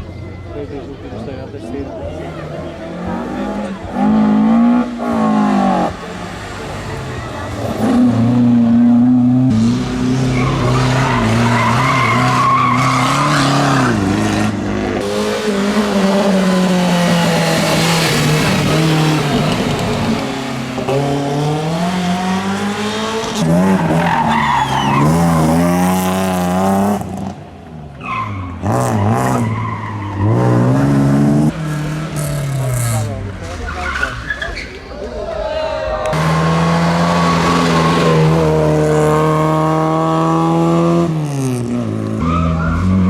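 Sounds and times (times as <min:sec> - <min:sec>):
rally car engines revving: 0:00.0 - 0:35.4, 0:36.0 - 0:43.0
tyres squealing: 0:09.8 - 0:14.3, 0:23.4 - 0:25.6, 0:31.5 - 0:35.4.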